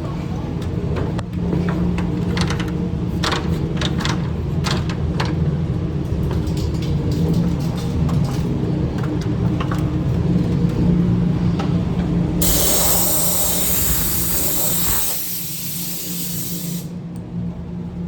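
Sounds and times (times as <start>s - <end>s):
low mechanical rumble: 8.2s - 18.0s
aerosol can spraying: 12.4s - 16.9s.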